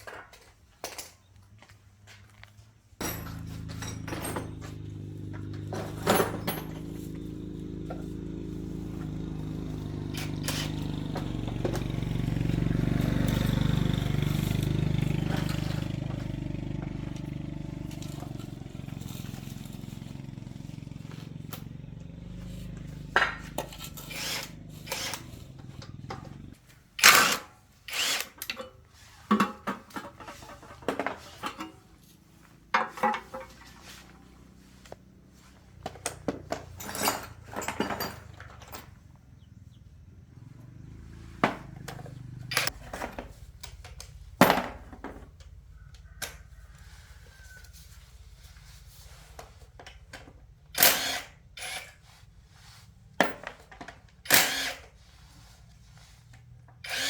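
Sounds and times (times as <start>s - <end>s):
electric motor humming: 3.0s - 26.6s, 54.4s - 54.8s.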